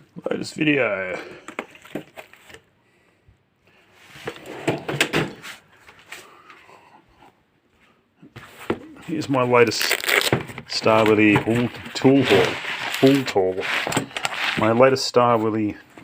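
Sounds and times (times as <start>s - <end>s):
rustling scrape: 10.8s - 15.0s.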